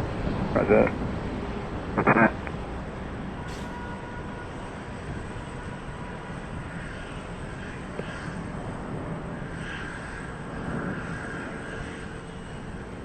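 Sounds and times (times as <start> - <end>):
jet engines roaring: 0.0 - 13.0.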